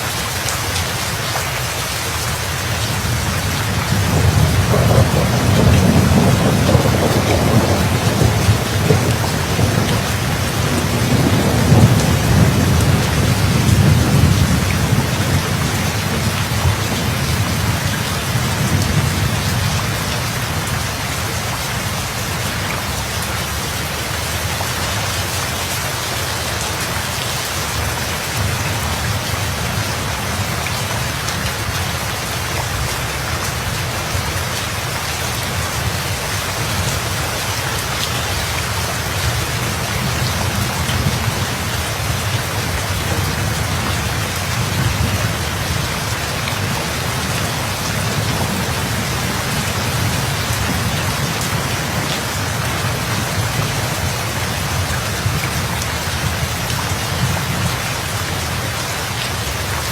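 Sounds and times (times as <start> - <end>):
rain pattering: 0.0 - 59.9
low thunder rumble: 3.0 - 20.7, 39.7 - 56.4.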